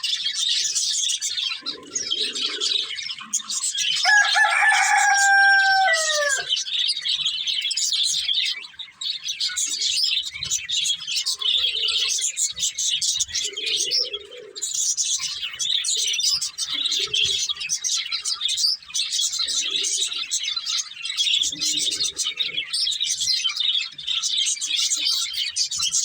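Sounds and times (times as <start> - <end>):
budgerigars chattering: 0.0 - 26.0
lower bird call: 4.0 - 6.5.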